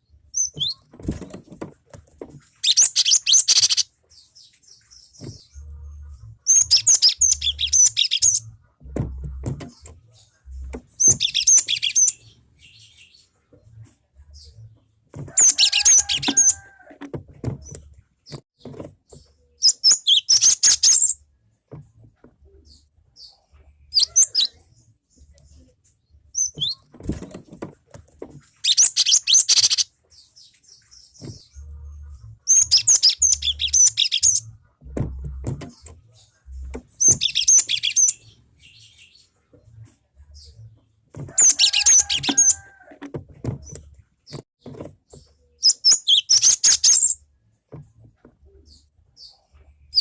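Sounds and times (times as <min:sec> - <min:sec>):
bird rapid high chirps: 0:45.6 - 0:47.2.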